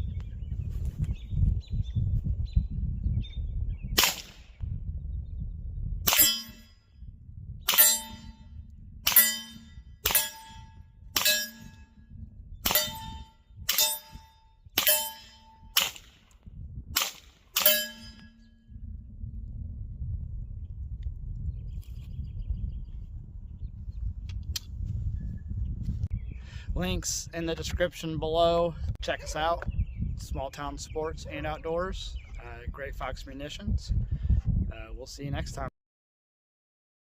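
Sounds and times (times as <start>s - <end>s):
suppressed pistol shots: 4.0s - 4.5s, 11.2s - 11.6s, 14.8s - 16.2s.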